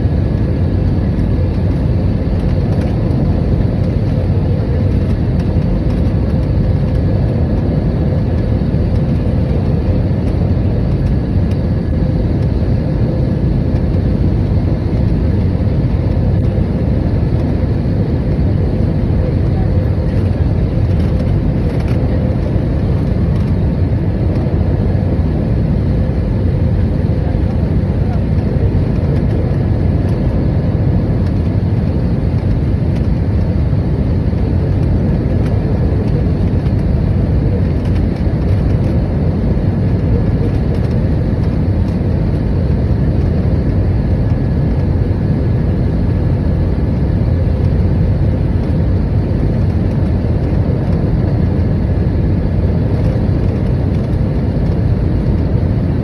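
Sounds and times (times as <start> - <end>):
airliner engine roar in cabin: 0.0 - 56.0.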